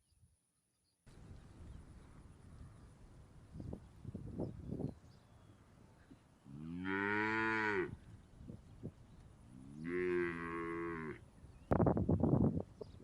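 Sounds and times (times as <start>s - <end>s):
cow mooing: 6.5s - 8.0s, 9.6s - 11.2s.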